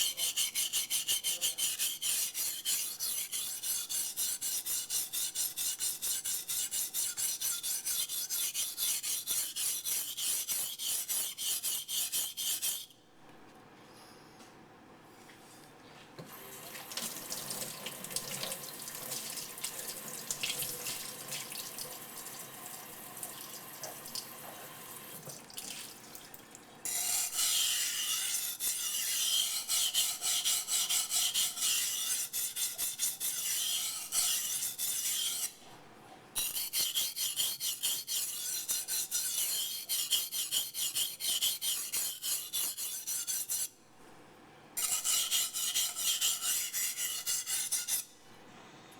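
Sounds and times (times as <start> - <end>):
knife grinding on whetstone: 0.0 - 13.0, 26.8 - 35.6, 36.4 - 43.7, 44.8 - 48.1.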